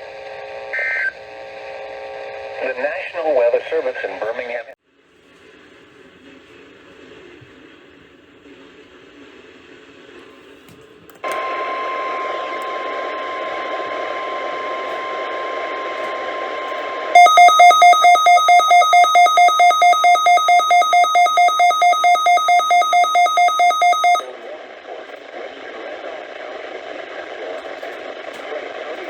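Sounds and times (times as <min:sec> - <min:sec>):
radio static: 0:00.3 - 0:04.8
steady warning alarm tone: 0:17.2 - 0:24.3
two-pitch beeping from radio: 0:17.2 - 0:24.3.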